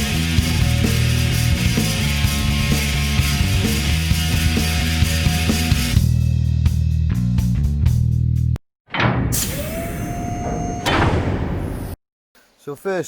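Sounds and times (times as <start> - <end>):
rock music: 0.0 - 8.2.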